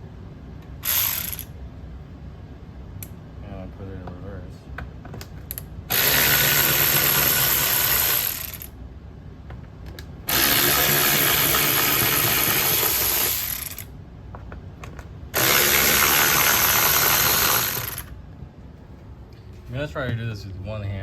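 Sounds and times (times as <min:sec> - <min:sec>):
electric ratchet spinning: 0:00.8 - 0:01.5, 0:05.9 - 0:08.8, 0:10.3 - 0:13.9, 0:15.4 - 0:18.2.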